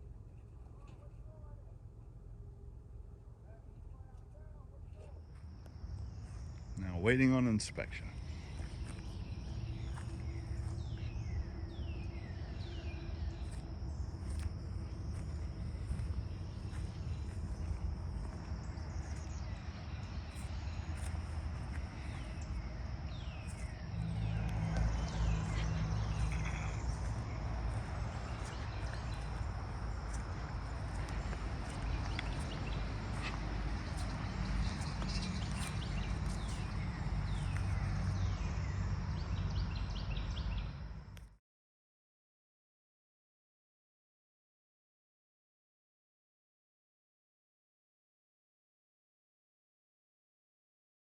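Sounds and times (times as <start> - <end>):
bird chirps: 5.0 - 40.8
high insect drone: 5.1 - 41.1.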